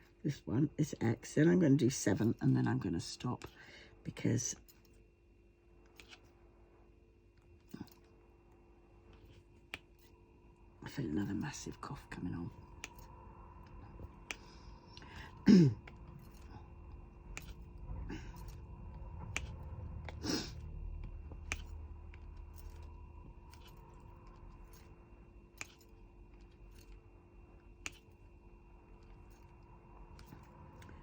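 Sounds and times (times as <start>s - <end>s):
woman coughing: 15.4s - 15.9s.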